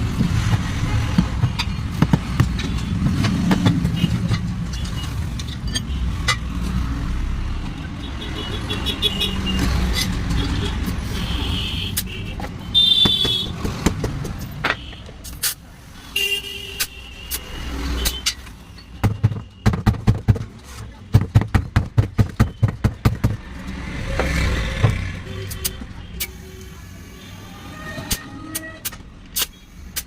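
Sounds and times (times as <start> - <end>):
low traffic rumble: 0.0 - 30.0
car horn toot: 10.5 - 13.5
sharp knocks: 21.1 - 23.5.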